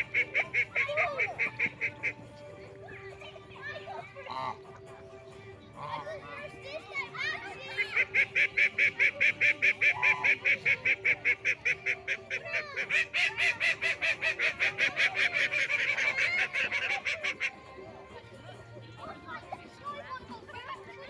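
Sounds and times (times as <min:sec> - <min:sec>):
geese honking: 0:00.0 - 0:02.4, 0:07.8 - 0:17.9
quieter lower poultry calls: 0:08.0 - 0:17.6.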